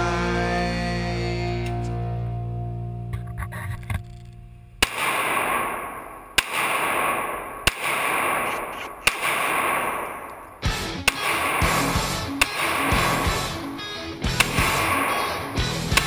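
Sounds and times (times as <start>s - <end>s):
pistol shots with echo: 4.8s - 16.0s.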